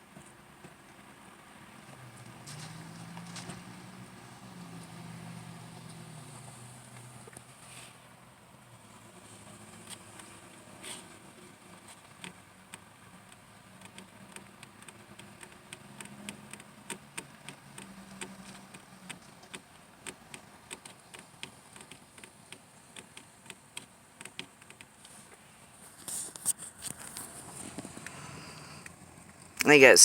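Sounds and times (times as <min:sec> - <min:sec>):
low background noise: 0:00.0 - 0:30.0
faint ticking clicks: 0:12.0 - 0:25.1.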